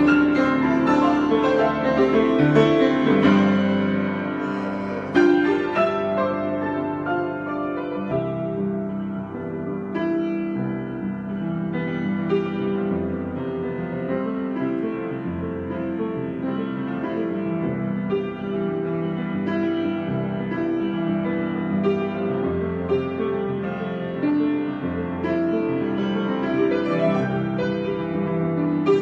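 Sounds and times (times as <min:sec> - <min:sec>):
solo piano: 0:00.0 - 0:29.0.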